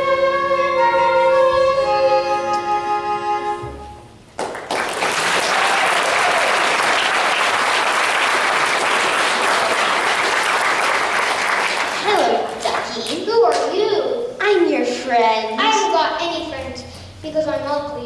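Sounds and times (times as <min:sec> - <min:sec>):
music held chord: 0:00.0 - 0:04.2
audience applause: 0:04.4 - 0:13.1.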